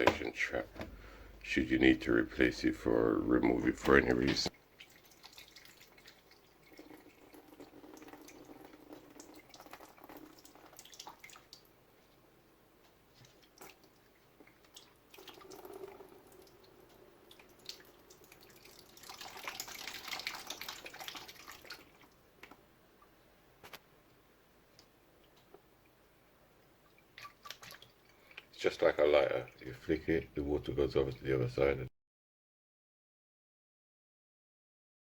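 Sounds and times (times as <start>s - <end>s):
running and dripping water: 3.3s - 12.2s, 13.0s - 23.3s, 24.7s - 31.8s.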